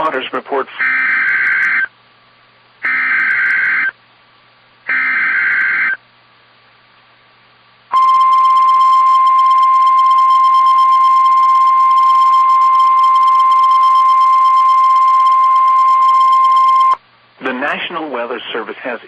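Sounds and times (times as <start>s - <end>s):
steady warning alarm tone: 0.8s - 1.9s, 2.8s - 3.9s, 4.9s - 6.0s, 7.9s - 17.0s
warbling digital data tones: 7.9s - 17.0s.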